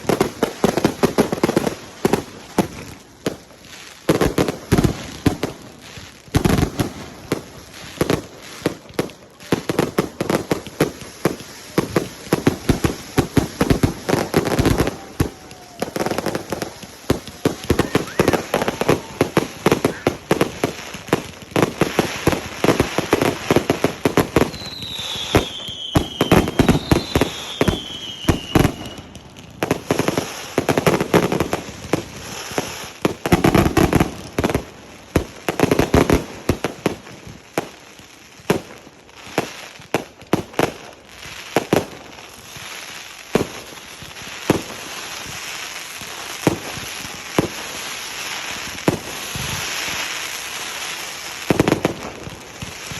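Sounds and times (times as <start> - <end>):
fireworks bangs and crackles: 0.0 - 52.9
falling firework whistles: 10.8 - 34.0.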